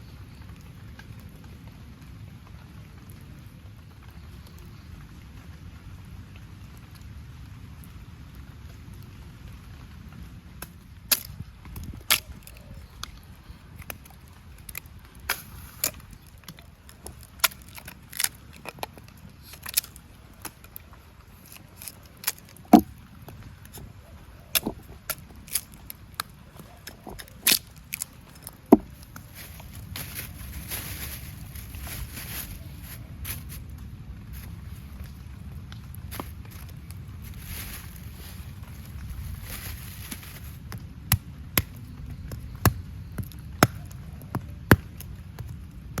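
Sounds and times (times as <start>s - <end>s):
low steady rumble: 0.0s - 46.0s
sharp wooden cracks and knocks: 10.6s - 31.1s, 39.5s - 46.0s.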